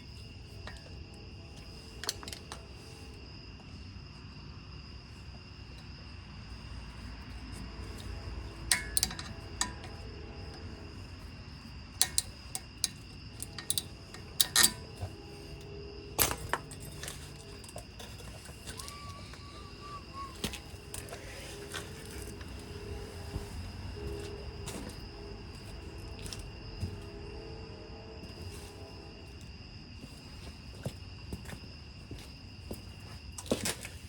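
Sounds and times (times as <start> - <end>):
hand tools clinking on metal: 0.6 - 1.0, 1.6 - 2.8, 7.9 - 10.7, 12.0 - 15.4, 16.2 - 22.6.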